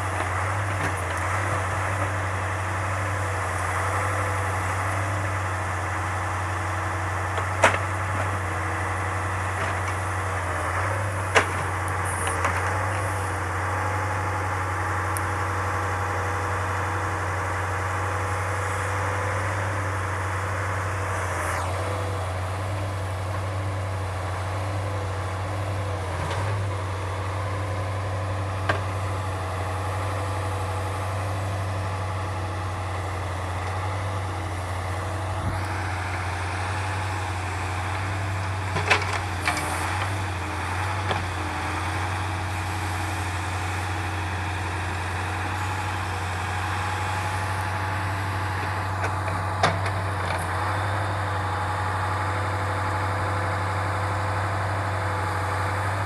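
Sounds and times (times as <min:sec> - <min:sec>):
truck engine humming: 0:00.0 - 0:56.0
hydraulic whine: 0:08.4 - 0:50.9.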